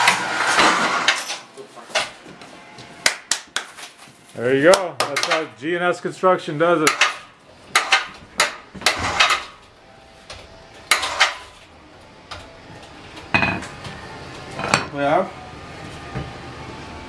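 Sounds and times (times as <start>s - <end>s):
metallic clanks and knocks: 6.8s - 9.7s, 10.3s - 11.7s, 12.3s - 14.9s.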